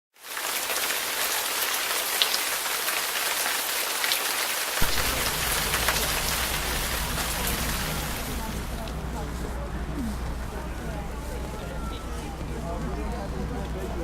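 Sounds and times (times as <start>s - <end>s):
snow ticking on surfaces: 4.8s - 11.8s
low rumble: 4.8s - 14.0s.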